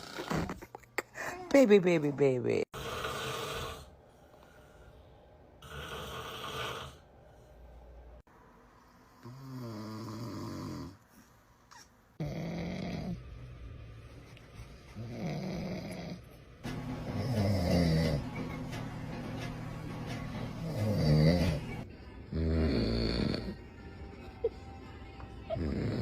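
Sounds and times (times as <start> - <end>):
man snoring loudly: 2.8 - 3.9, 5.6 - 7.1, 9.2 - 11.0, 12.2 - 13.2, 15.0 - 16.2, 17.1 - 18.2, 20.6 - 21.6, 22.3 - 23.6, 25.6 - 26.0.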